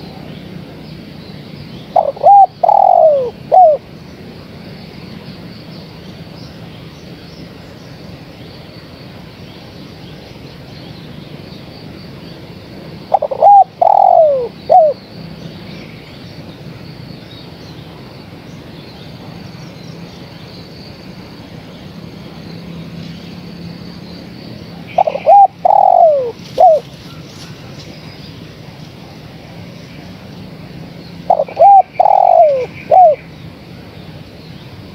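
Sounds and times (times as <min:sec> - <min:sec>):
dove cooing: 0:01.9 - 0:03.8, 0:13.1 - 0:15.0, 0:24.9 - 0:27.5, 0:31.3 - 0:33.3.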